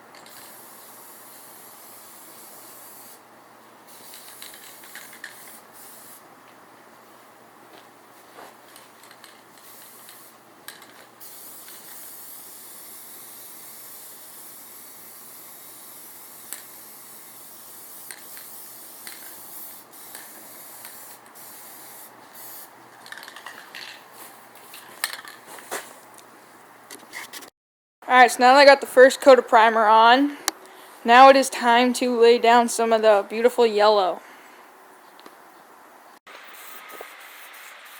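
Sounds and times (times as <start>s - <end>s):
spray paint hiss: 0.2s - 3.2s, 3.9s - 6.3s, 9.0s - 25.9s, 36.3s - 37.9s.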